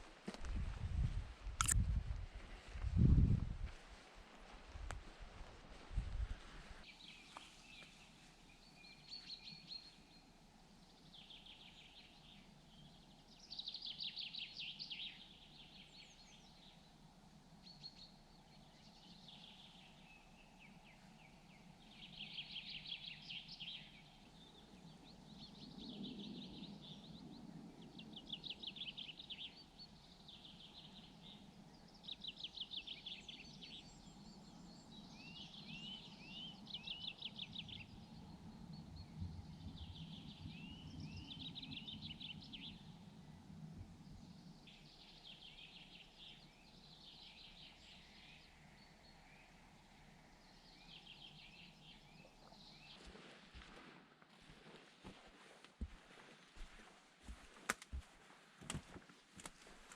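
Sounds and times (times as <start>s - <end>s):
faint low rumble: 0.0s - 13.3s
songbirds trilling: 6.9s - 53.8s.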